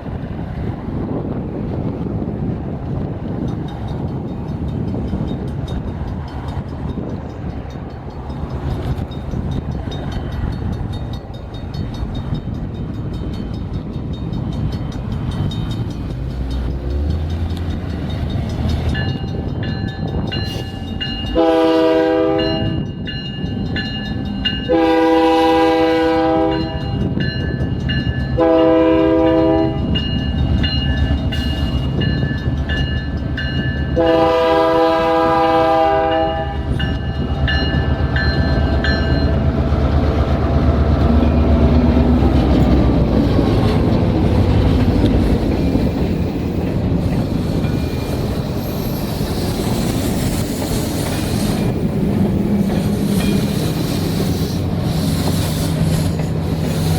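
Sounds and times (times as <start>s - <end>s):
train air horn blasts: 20.5s - 22.8s, 24.7s - 27.0s, 28.4s - 30.0s, 34.0s - 36.8s
bell ringing: 36.8s - 39.4s.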